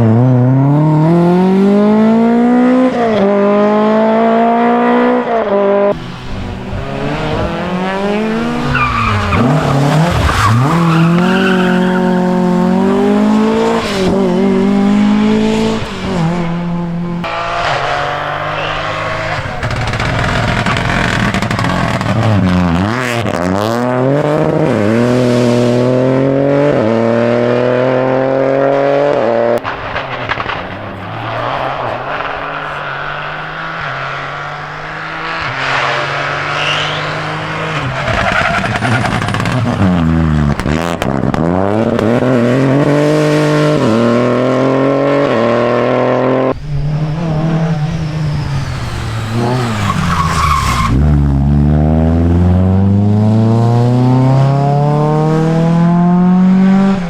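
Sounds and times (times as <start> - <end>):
rally car engine at full throttle: 0.0 - 57.0
tyres skidding and squealing: 5.9 - 23.3, 29.6 - 45.4, 46.1 - 55.4.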